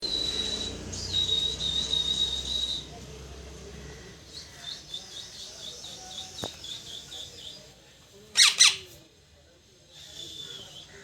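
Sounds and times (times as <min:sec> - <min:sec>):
parrot chirping: 0:08.4 - 0:08.8
parrot squawking: 0:08.4 - 0:08.8.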